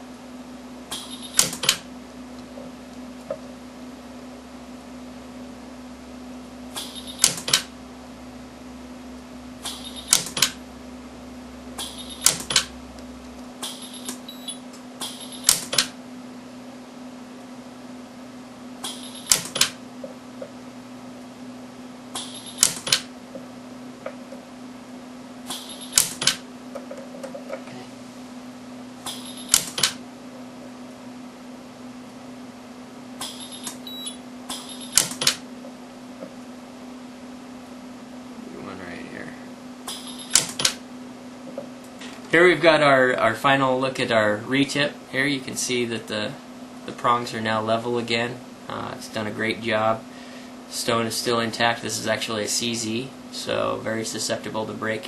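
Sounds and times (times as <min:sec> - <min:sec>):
low hum: 0:00.0 - 0:49.4
welder pulse hiss and snap: 0:13.6 - 0:13.8.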